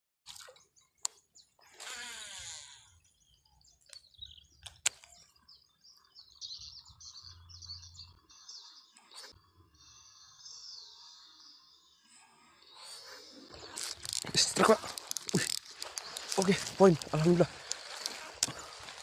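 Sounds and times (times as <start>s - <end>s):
birds chirping: 0.4s - 19.0s
sharp clicks: 4.6s - 5.2s, 13.7s - 19.0s.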